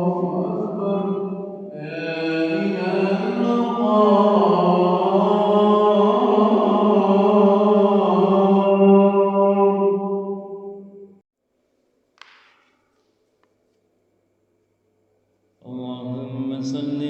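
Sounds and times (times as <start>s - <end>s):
man chanting call to prayer: 0.0s - 10.3s, 15.6s - 17.0s.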